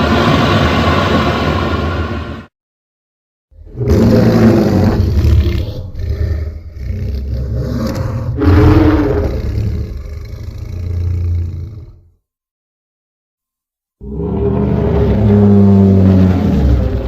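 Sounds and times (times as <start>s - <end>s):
monster roar: 3.6s - 12.1s, 14.0s - 17.0s.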